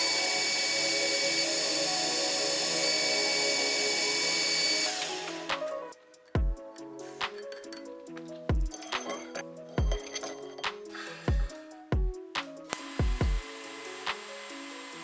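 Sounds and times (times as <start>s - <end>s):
high power tool whir: 0.0s - 5.7s, 12.7s - 15.0s
background music: 0.0s - 15.0s.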